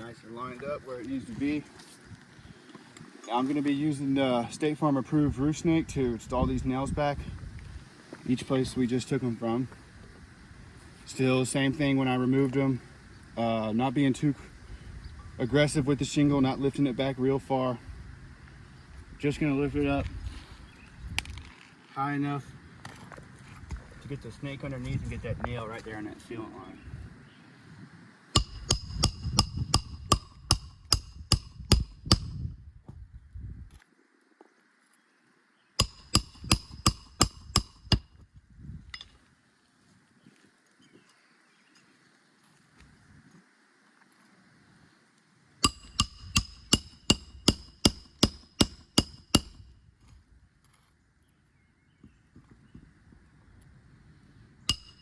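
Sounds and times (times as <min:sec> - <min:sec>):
hammer striking metal: 0:45.6 - 0:49.6, 0:54.7 - 0:55.0.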